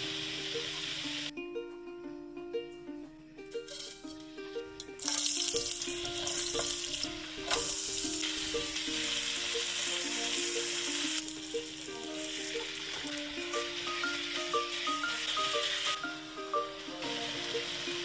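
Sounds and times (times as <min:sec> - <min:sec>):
food sizzling in a frying pan: 0:00.0 - 0:01.3, 0:04.9 - 0:18.0
plucked-string background music: 0:00.0 - 0:18.0.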